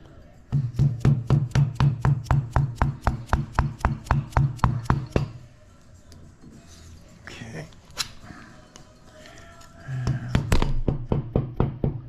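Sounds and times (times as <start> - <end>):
hammer tapping metal: 0.5 - 5.4.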